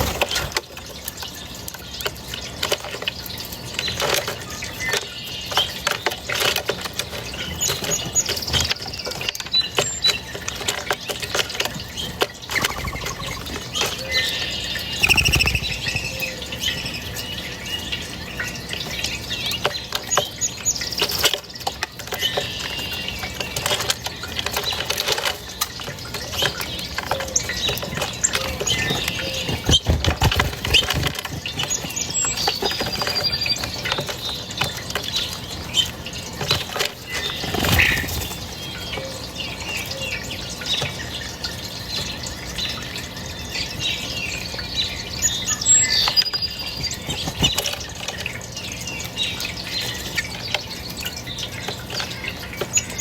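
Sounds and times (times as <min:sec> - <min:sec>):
sharp clicks and rustling: 0:00.0 - 0:17.5, 0:18.1 - 0:43.3, 0:44.4 - 0:53.0
small birds chirping: 0:00.0 - 0:53.0
bird trill: 0:11.8 - 0:36.4, 0:37.0 - 0:53.0.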